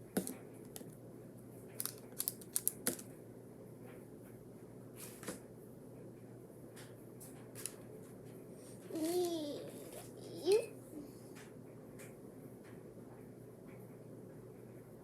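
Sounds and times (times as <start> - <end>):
faint steady hum: 0.0 - 15.0
small objects clicking and tapping: 0.1 - 1.0, 1.7 - 3.1.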